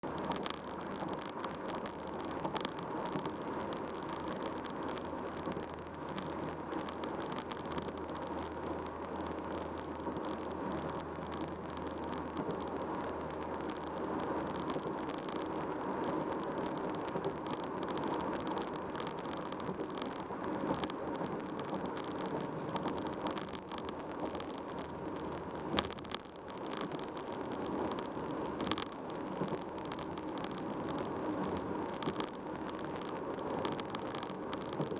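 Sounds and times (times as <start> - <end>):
tyre and road noise: 0.0 - 34.9.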